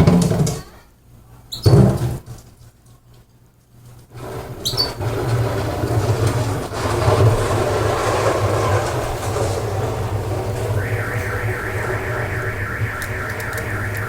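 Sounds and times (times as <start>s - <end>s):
loud steady rushing noise: 10.7s - 14.0s.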